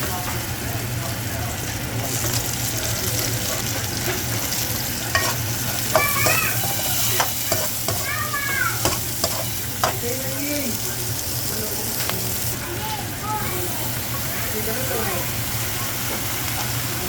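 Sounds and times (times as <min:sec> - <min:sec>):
food sizzling in a pan: 0:00.0 - 0:17.0
utensil clicking and scraping pan: 0:03.4 - 0:10.2.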